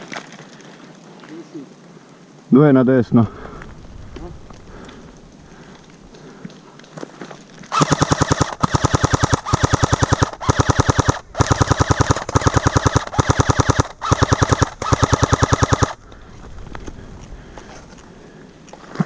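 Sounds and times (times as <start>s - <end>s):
airsoft gun firing bursts: 7.7s - 16.0s.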